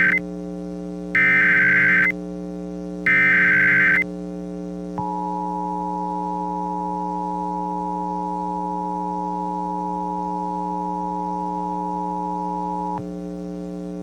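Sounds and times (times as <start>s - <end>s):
two-tone alert signal: 0.0s - 0.2s, 1.2s - 2.1s, 3.1s - 4.0s
constant low hum: 0.0s - 14.0s.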